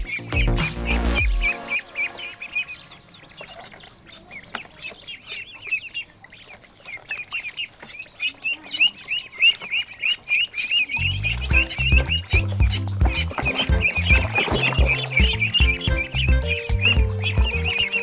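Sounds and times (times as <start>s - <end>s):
ducklings peeping: 0.0s - 18.0s.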